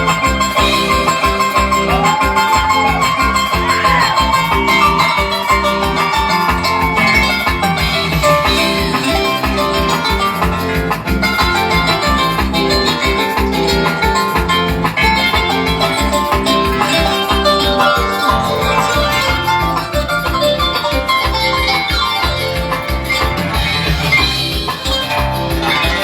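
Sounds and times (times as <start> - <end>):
loud dance music: 0.0 - 26.0.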